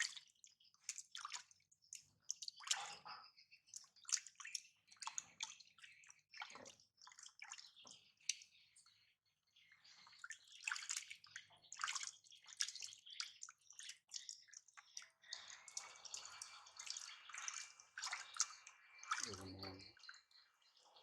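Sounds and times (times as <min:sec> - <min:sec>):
water splashing and dripping: 0:00.0 - 0:09.0, 0:09.8 - 0:21.0
low voice: 0:19.2 - 0:20.0.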